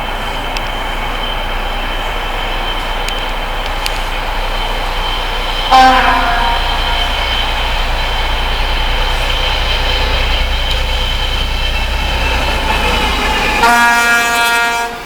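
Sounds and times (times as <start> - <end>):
train rumbling past: 0.0 - 15.0
short train horn blast: 5.7 - 7.1, 13.6 - 15.0.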